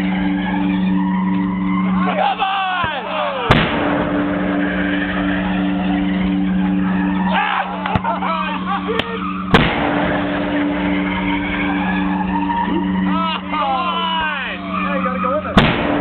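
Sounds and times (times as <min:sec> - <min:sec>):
machinery humming: 0:00.0 - 0:16.0
hail cannon bang: 0:02.8 - 0:05.4, 0:07.8 - 0:08.3, 0:09.0 - 0:12.2, 0:15.6 - 0:16.0.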